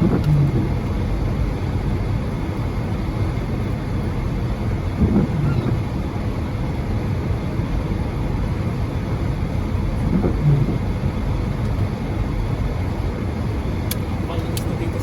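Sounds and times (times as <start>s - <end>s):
car driving rumble: 0.0s - 15.0s.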